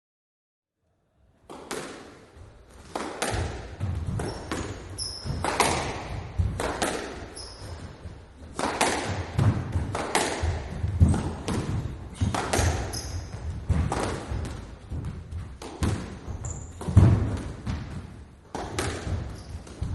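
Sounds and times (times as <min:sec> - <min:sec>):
squash ball hits: 0:01.4 - 0:19.9
shoes squeaking: 0:03.9 - 0:08.6, 0:10.1 - 0:17.0, 0:18.6 - 0:19.9.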